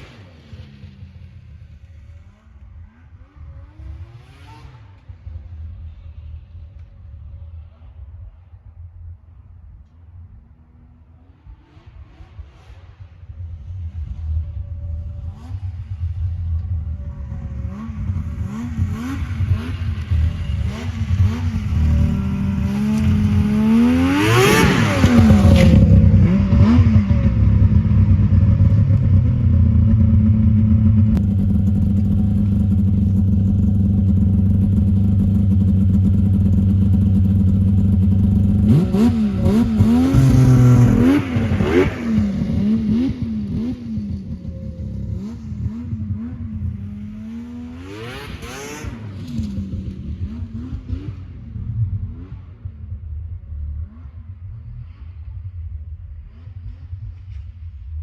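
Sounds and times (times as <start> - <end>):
snowmobile engine revving: 15.2 - 52.6.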